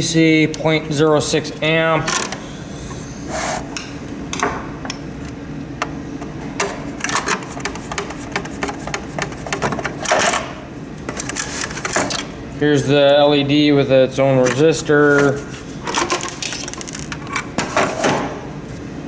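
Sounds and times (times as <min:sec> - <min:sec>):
steady background hum: 0:00.0 - 0:19.0
plastic parts clicking and rattling: 0:15.2 - 0:17.5.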